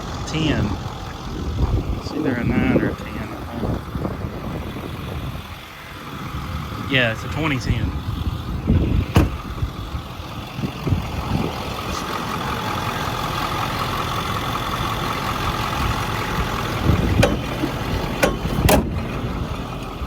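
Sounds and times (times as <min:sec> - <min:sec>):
truck engine idling: 0:00.0 - 0:20.0
sharp knocks: 0:17.2 - 0:19.0.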